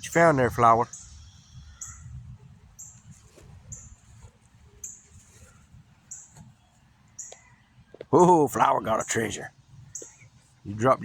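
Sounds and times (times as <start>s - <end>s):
insect chirping: 0.7s - 7.6s.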